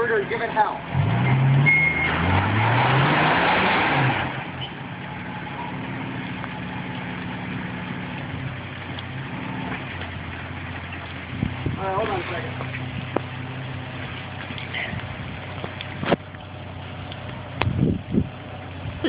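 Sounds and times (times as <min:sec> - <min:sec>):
engine revving with rushing hiss: 0:00.3 - 0:04.7
engine idling: 0:04.4 - 0:19.0.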